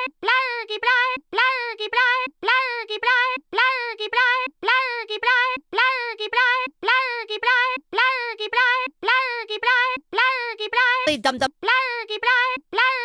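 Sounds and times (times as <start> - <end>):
high-pitched voice-like sound: 4.6 - 13.0.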